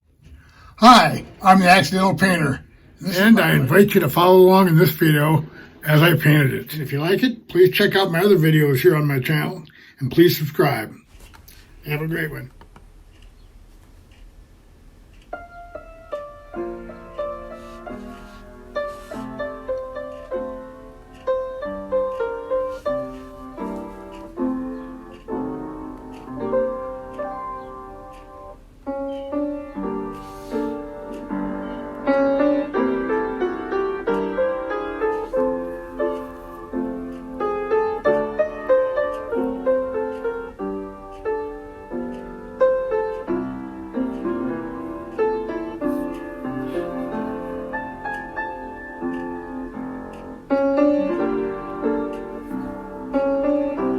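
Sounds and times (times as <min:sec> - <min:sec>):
solo piano melody with chords: 0:15.3 - 0:53.9.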